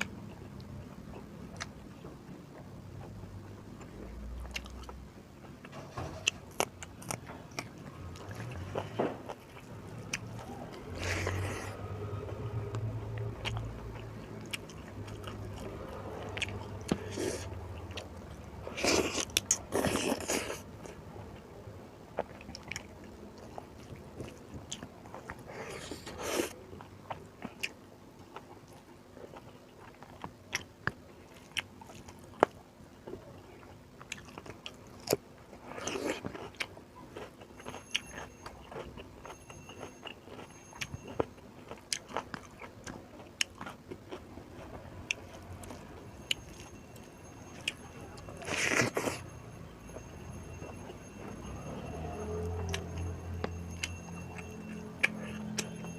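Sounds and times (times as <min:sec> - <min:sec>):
person chewing food: 0:00.0 - 0:21.4, 0:22.1 - 0:50.1, 0:50.7 - 0:55.9.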